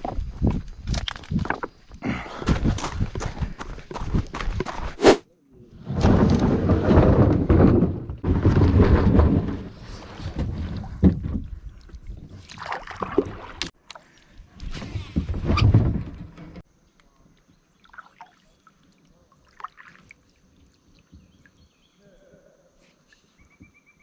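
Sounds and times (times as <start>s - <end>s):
water sloshing around hull: 10.2s - 14.2s
paddle splashes: 12.4s - 13.6s.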